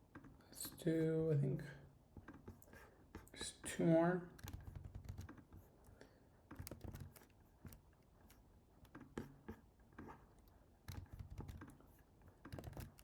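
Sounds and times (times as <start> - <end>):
computer keyboard and mouse clicks: 4.4 - 5.6, 6.5 - 9.3, 10.4 - 13.0.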